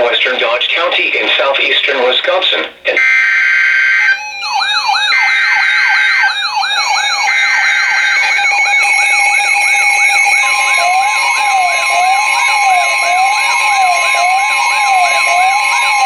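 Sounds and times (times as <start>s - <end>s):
held alarm tones: 3.0s - 16.0s
yelp siren sweeping: 3.0s - 16.0s
steady high beep: 4.1s - 16.0s.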